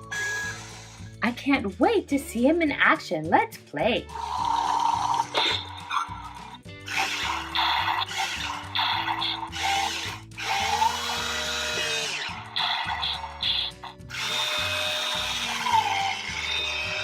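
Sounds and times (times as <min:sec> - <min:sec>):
toy electric motor whirring: 0:00.0 - 0:01.2, 0:04.1 - 0:17.0
background music with low notes: 0:00.0 - 0:17.0.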